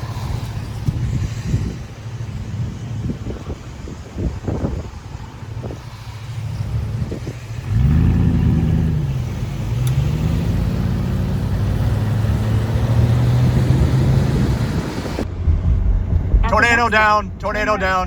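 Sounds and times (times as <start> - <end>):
road and wind noise: 0.0 - 18.0
car engine accelerating: 5.8 - 16.7.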